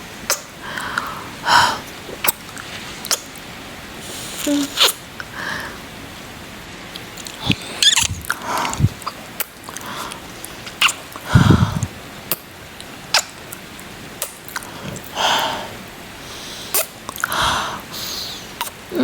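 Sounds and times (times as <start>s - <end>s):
rain hiss: 0.0s - 19.0s
wet kissing sounds: 0.3s - 0.5s, 3.1s - 3.3s, 4.4s - 5.0s, 7.2s - 9.6s, 10.7s - 12.5s, 13.1s - 13.6s, 14.2s - 14.7s, 16.7s - 17.4s
breathy exhales: 11.2s - 11.9s, 14.6s - 18.6s.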